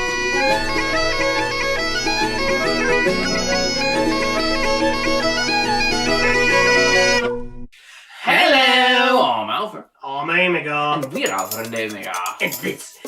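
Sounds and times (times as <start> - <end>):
bagpipe-like melody over drone: 0.0 - 7.4.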